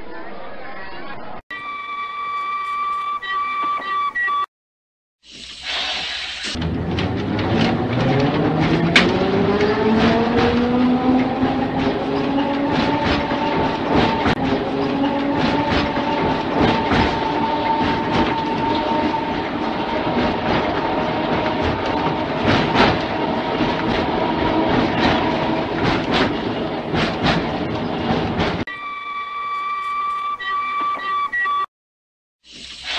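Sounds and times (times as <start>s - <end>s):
wheels rumbling on rails: 6.5s - 28.8s
wheels clicking over rail joints: 6.6s - 28.7s
electric tram motor whine: 6.6s - 30.9s.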